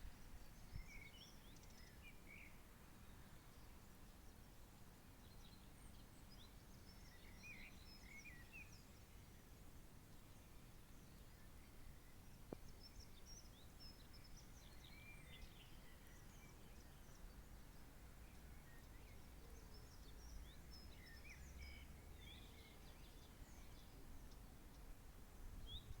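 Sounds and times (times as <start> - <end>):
songbirds chirping: 0.0 - 26.0.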